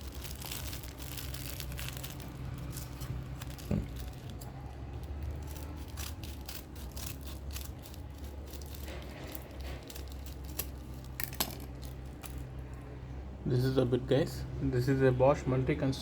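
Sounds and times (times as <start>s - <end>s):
packaging crinkling: 0.0s - 12.6s.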